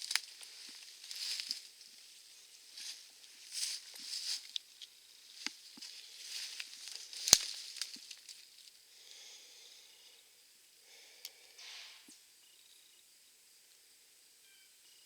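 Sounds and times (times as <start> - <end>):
dry leaves rustling and crackling: 0.0 - 8.7.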